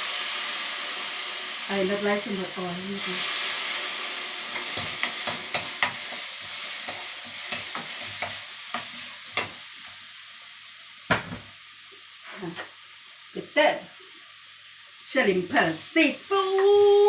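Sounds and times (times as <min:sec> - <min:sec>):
food sizzling in frying pan: 0:00.0 - 0:17.0
utensil knocking and scraping pan: 0:04.5 - 0:06.2, 0:06.8 - 0:09.6.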